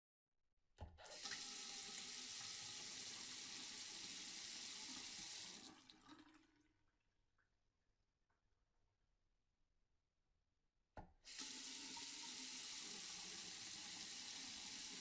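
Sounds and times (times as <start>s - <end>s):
water running from faucet: 1.1s - 6.3s, 11.3s - 15.0s.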